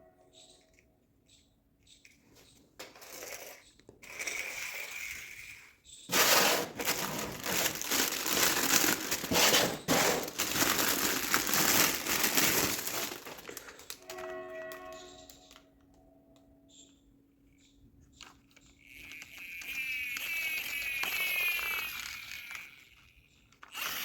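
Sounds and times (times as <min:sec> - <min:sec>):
plastic packaging crinkling: 0:06.1 - 0:14.2.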